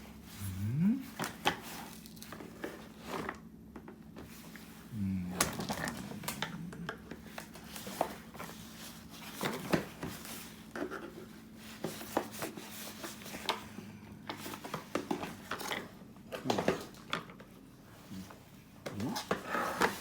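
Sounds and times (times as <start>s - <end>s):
faint low hum: 0.0s - 12.2s.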